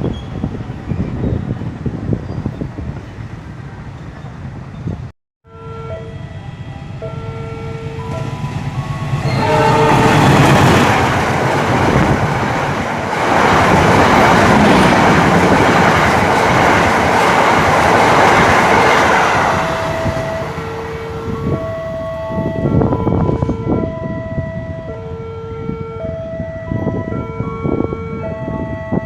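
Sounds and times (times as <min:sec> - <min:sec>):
train passing at speed: 0:00.0 - 0:29.0
train horn toots: 0:05.5 - 0:11.0.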